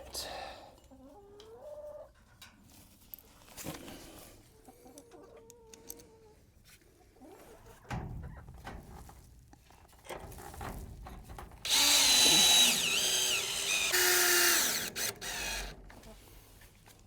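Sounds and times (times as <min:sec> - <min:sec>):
cordless drill driving screw: 0:11.7 - 0:15.8.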